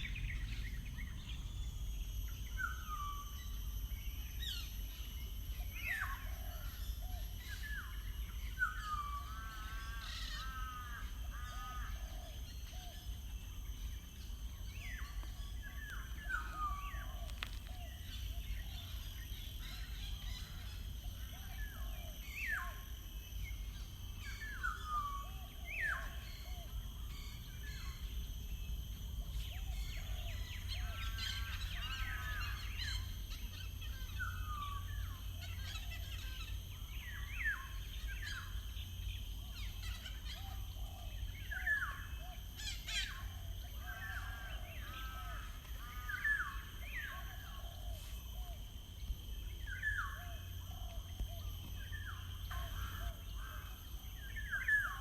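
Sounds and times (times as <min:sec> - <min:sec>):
songbirds singing: 0:00.0 - 0:55.0.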